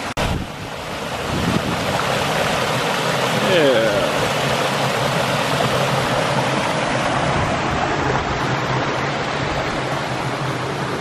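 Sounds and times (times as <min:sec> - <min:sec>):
waterfall splashing over rock: 0:00.0 - 0:11.0.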